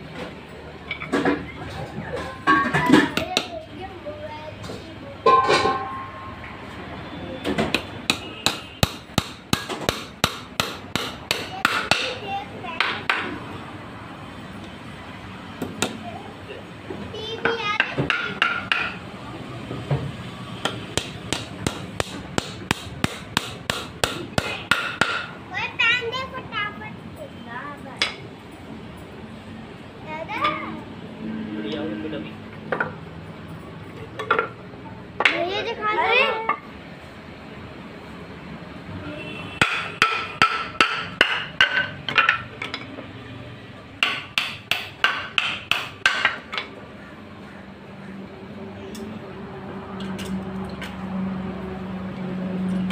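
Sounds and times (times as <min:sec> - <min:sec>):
hammer striking: 0:07.7 - 0:12.2, 0:17.4 - 0:19.0, 0:20.6 - 0:25.3, 0:39.6 - 0:42.8, 0:44.0 - 0:46.7.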